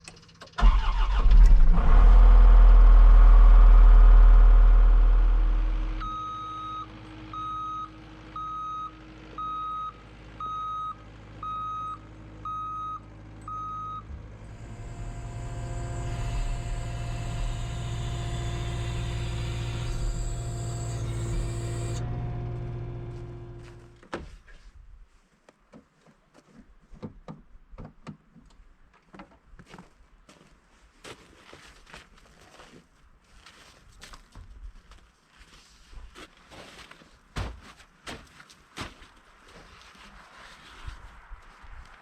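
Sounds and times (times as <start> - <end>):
skid steer engine rumbling: 0.0 - 24.0
backup alarm beeping: 6.0 - 14.1.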